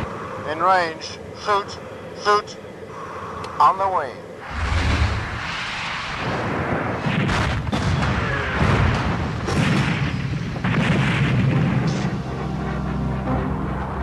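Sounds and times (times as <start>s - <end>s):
explosion booms: 4.5s - 12.2s
music: 11.7s - 14.0s.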